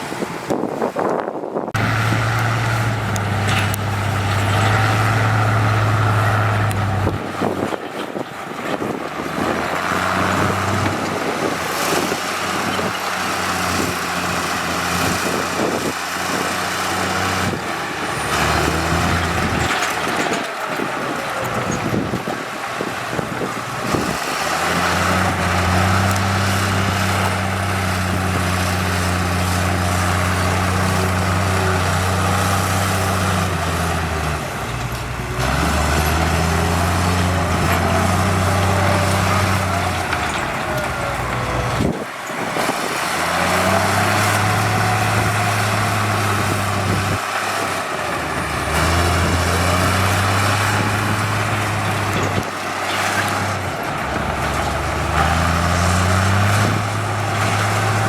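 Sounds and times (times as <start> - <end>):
diesel machinery running: 0.0 - 58.0.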